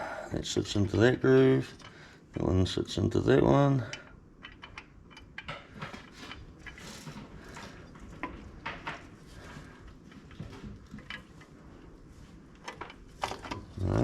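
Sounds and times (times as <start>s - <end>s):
metal parts clicking and clinking: 3.9s - 9.1s.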